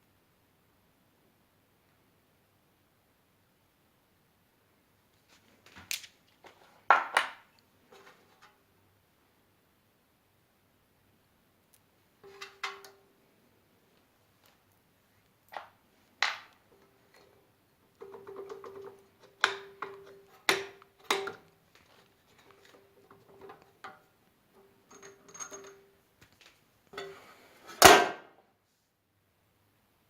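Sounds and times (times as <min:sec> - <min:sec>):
metallic clunk: 0:12.2 - 0:13.0
metal parts clinking and knocking: 0:24.8 - 0:25.9.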